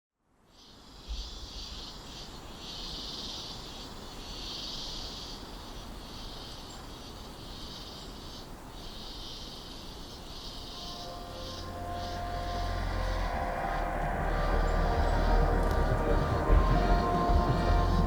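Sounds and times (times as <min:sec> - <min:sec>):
insects buzzing: 0:00.5 - 0:18.0
low rumble: 0:11.0 - 0:18.0.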